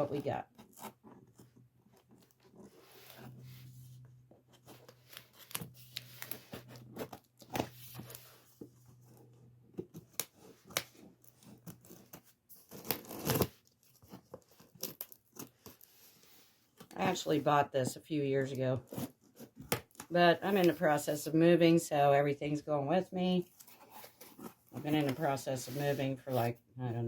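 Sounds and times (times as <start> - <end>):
cardboard tearing and rustling: 4.6 - 8.5, 9.8 - 16.3.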